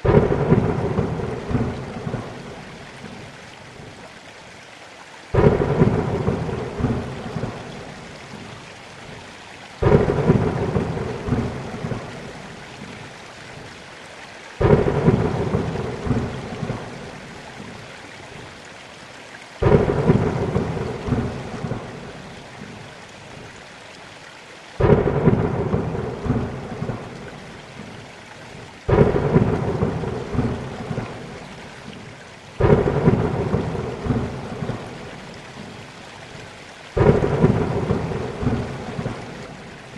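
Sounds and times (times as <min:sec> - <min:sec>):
thunderclaps rumbling: 0:00.0 - 0:03.2, 0:05.3 - 0:08.5, 0:09.8 - 0:13.0, 0:14.6 - 0:17.3, 0:19.6 - 0:22.3, 0:24.8 - 0:27.9, 0:28.9 - 0:31.6, 0:32.6 - 0:35.7, 0:37.0 - 0:39.9
heavy rain: 0:00.0 - 0:39.9.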